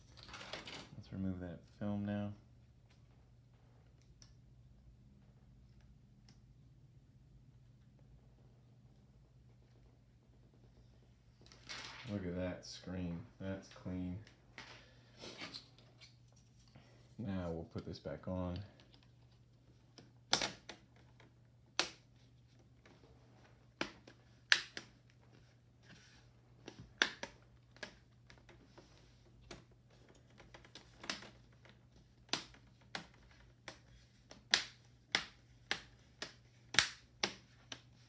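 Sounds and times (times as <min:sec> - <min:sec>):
plastic clips snapping into place: 0:20.0 - 0:20.8, 0:23.8 - 0:24.9, 0:32.3 - 0:37.8.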